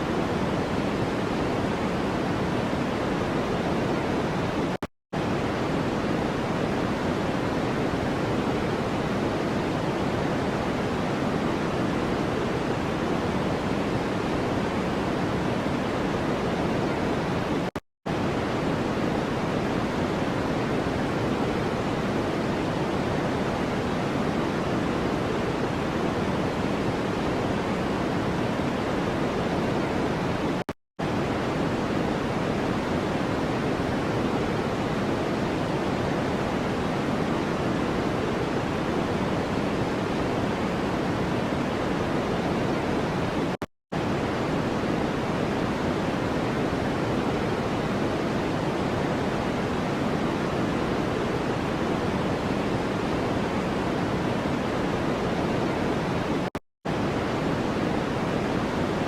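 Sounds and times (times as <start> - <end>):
white noise hiss: 0.0 - 59.0.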